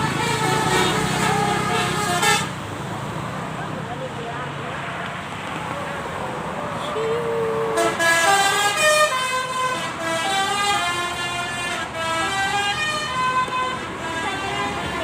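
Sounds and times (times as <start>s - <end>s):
bus musical horn tune: 0.0s - 2.6s, 6.9s - 15.0s.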